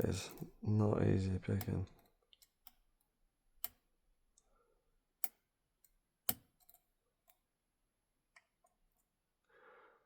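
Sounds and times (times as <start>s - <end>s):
lock pick metallic clicks: 1.6s - 2.9s, 3.6s - 3.9s, 5.2s - 7.4s.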